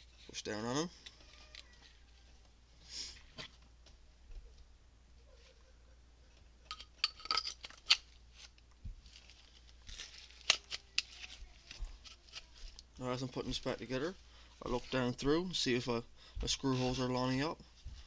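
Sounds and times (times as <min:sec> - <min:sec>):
metal parts clicking and clinking: 0:06.7 - 0:08.0.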